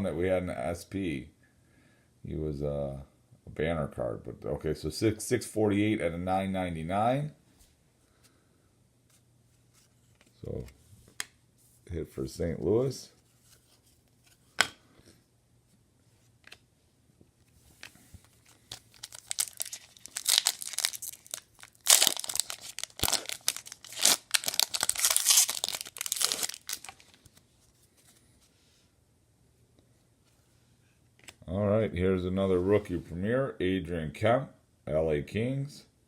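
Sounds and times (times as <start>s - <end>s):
card pack wrapper tearing: 18.3s - 27.4s.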